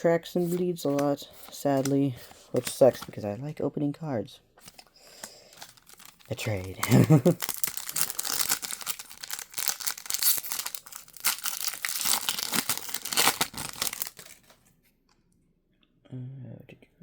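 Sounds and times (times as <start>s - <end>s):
foil wrapper crinkling and tearing: 4.7s - 14.6s.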